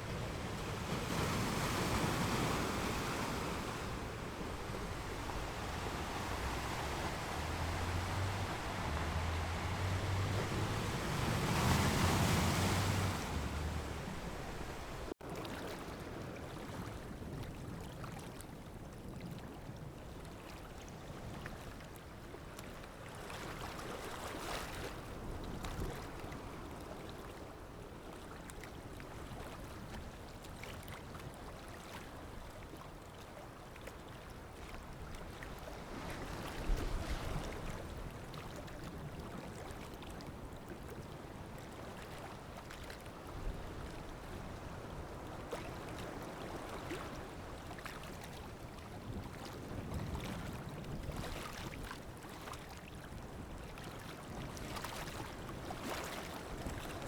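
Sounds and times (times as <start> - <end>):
sea waves washing in: 0.0 - 15.2.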